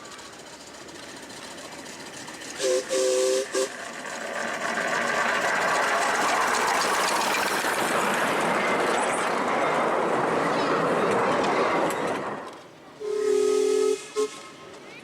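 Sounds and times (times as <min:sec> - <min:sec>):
miniature steam locomotive running: 0:00.0 - 0:15.0
two-note train whistle: 0:02.6 - 0:03.7, 0:13.0 - 0:14.5.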